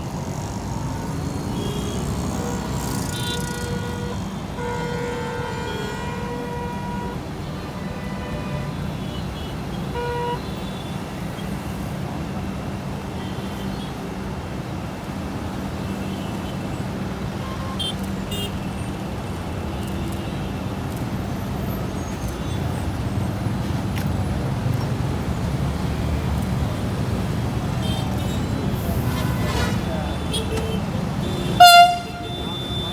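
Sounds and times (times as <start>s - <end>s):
vehicle rumbling: 0.0s - 5.3s, 14.1s - 32.9s.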